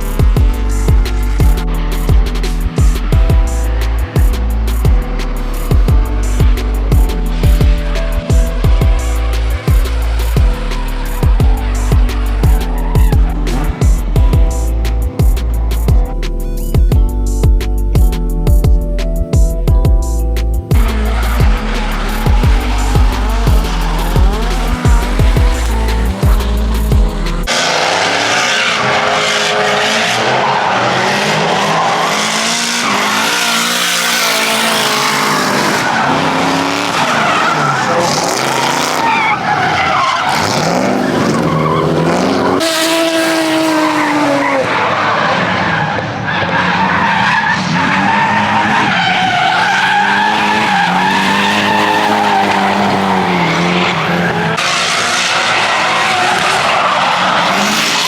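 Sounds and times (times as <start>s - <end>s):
tyres skidding and squealing: 0.0s - 16.9s, 20.3s - 58.0s
car engine revving: 0.0s - 58.0s.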